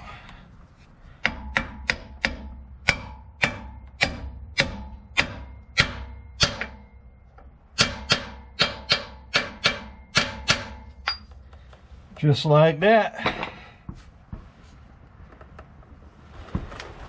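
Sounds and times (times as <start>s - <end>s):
hammer striking metal socket: 1.2s - 11.4s.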